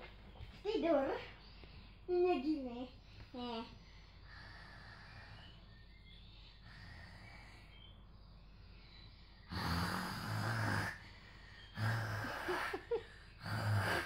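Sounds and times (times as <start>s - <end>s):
person mock snoring: 9.5s - 11.0s, 11.8s - 14.0s.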